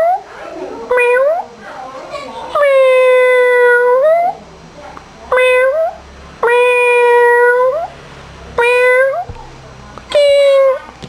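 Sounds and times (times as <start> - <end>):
cat meowing: 5.3 - 7.9, 8.6 - 9.3, 10.1 - 10.9.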